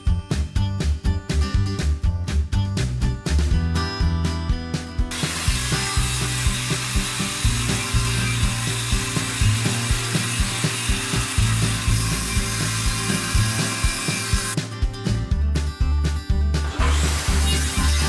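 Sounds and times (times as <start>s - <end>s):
background music with a beat: 0.0s - 18.0s
power saw cutting plywood: 5.1s - 14.6s, 16.6s - 18.0s.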